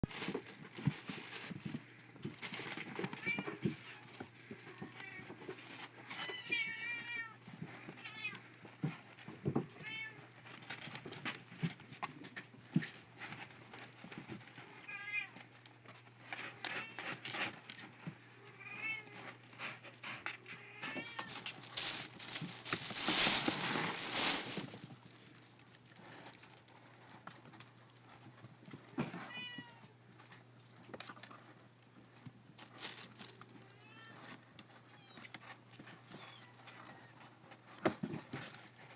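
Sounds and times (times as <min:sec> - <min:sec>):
cat litter scratching: 0:00.0 - 0:38.9
rustling rush: 0:21.2 - 0:25.3.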